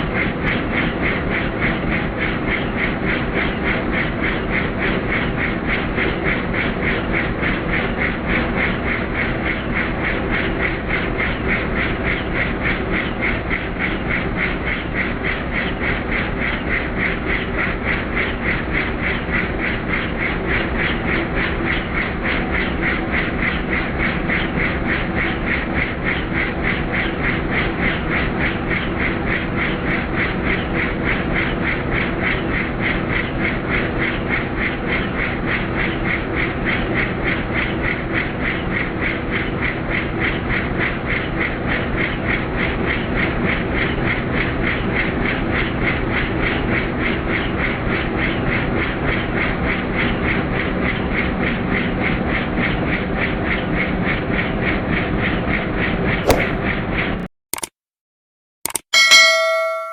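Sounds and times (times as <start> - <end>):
helicopter rotor beating: 0.0 - 33.2
helicopter engine hum: 0.0 - 33.5.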